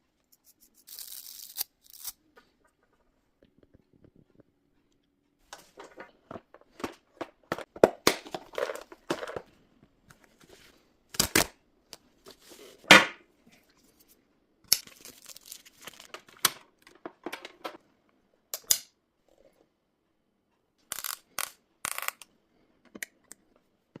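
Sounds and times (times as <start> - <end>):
plastic parts clicking and knocking: 5.5 - 9.5, 15.9 - 17.8
plastic packaging crinkling and tearing: 14.9 - 16.4.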